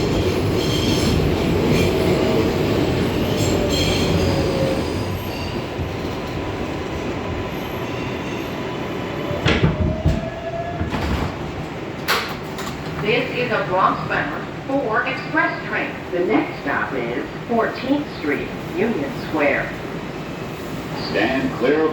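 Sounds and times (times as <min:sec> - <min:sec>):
train running noise: 0:00.0 - 0:21.9
train wheels squealing: 0:03.1 - 0:05.7.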